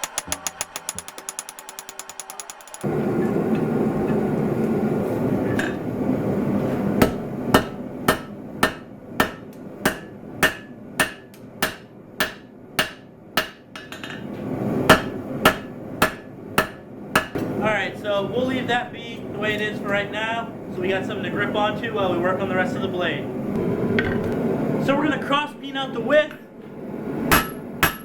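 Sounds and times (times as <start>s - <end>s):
hammer striking steel on anvil: 0.0s - 2.9s, 7.0s - 14.3s, 14.9s - 17.5s, 27.3s - 28.0s.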